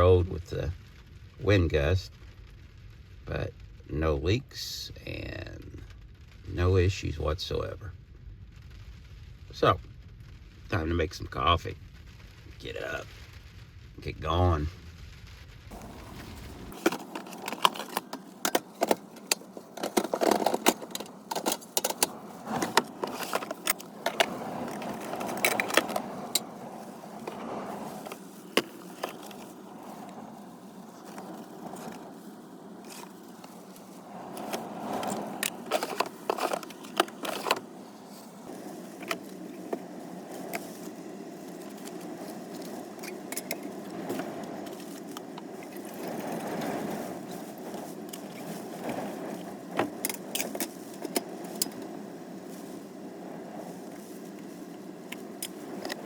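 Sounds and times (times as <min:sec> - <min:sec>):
steady background hiss: 0:00.0 - 0:56.0
camping gear clicking and clinking: 0:15.7 - 0:56.0.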